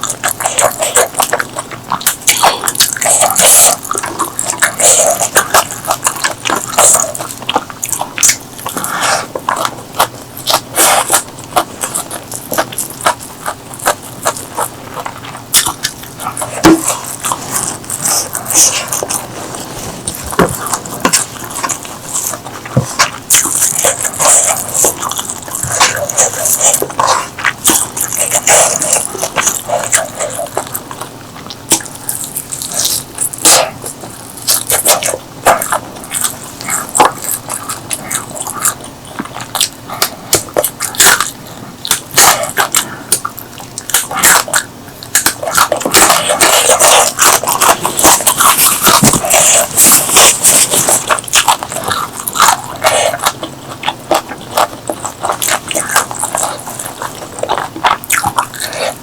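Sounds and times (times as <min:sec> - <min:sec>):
crunchy chewing: 0:00.0 - 0:59.0.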